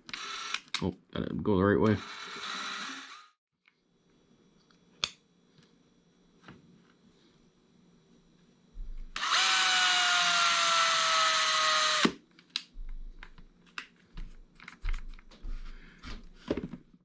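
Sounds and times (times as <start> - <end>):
cordless drill whining: 0.1 - 0.7, 1.9 - 3.3, 9.2 - 12.2.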